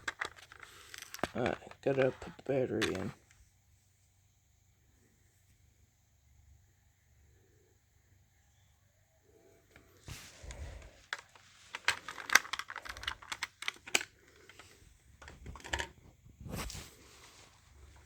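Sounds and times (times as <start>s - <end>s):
plastic clicks and rattles: 0.0s - 3.4s, 11.0s - 16.0s.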